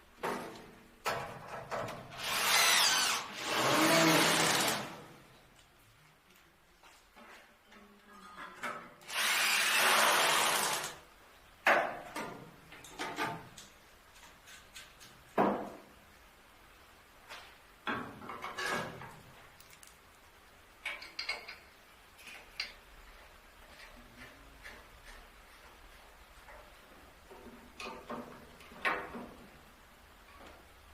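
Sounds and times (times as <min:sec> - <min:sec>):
power tool running: 0:02.2 - 0:05.0, 0:09.1 - 0:11.0
tools knocking and clattering: 0:11.7 - 0:15.8, 0:20.8 - 0:22.8.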